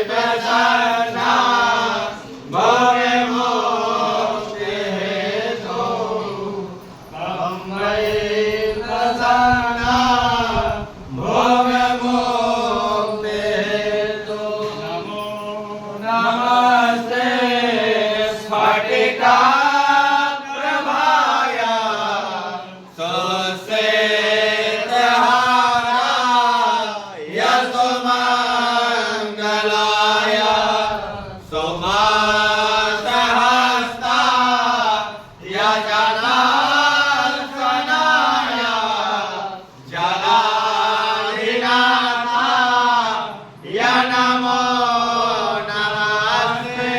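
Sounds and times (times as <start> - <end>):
person chanting a hymn: 0.0 - 46.9.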